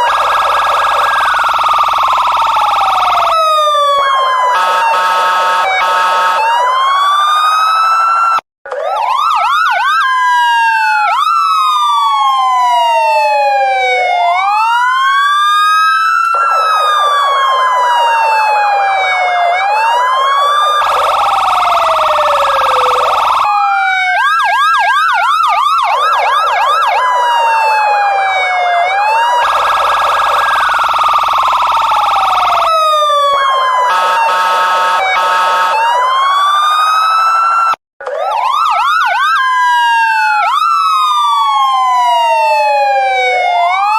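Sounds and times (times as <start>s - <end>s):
harsh buzzing siren blasts: 0.0s - 43.9s
police siren wailing and yelping: 0.0s - 43.9s.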